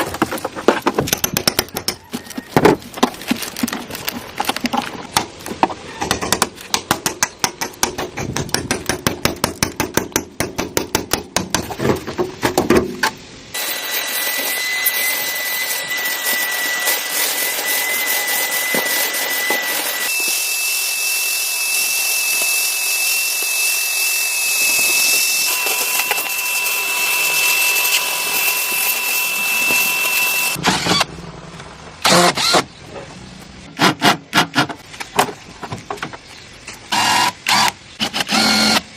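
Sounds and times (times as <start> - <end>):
power tool whining: 13.6 - 31.1, 32.0 - 32.6, 36.9 - 38.9.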